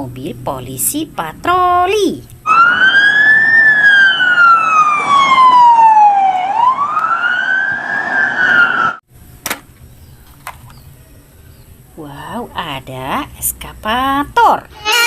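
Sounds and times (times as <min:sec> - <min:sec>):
police siren wailing: 0:02.5 - 0:09.0.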